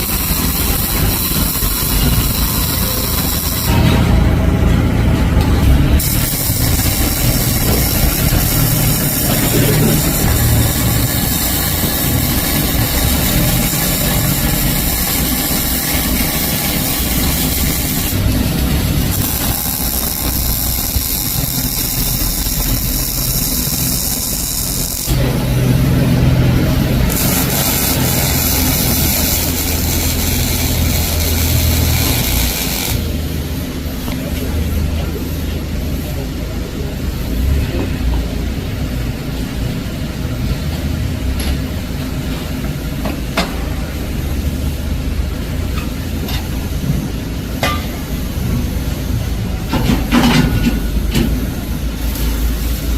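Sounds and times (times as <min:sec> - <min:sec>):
welding arc crackling hiss: 0:00.0 - 0:04.0, 0:05.6 - 0:33.2, 0:47.6 - 0:52.9
low machine hum: 0:00.0 - 0:52.1.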